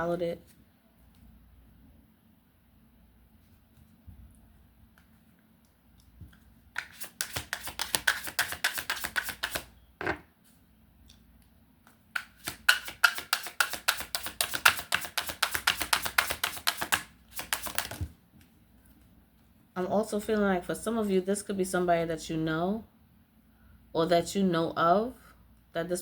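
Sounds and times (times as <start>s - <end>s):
cards being shuffled: 6.3s - 9.7s, 12.2s - 18.1s.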